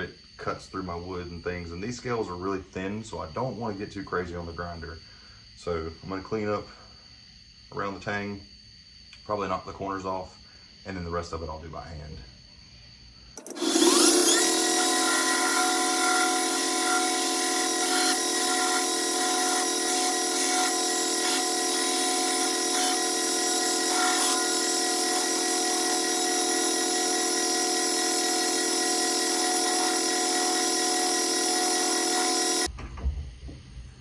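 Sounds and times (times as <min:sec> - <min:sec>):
belt grinder whining: 0:13.4 - 0:32.7.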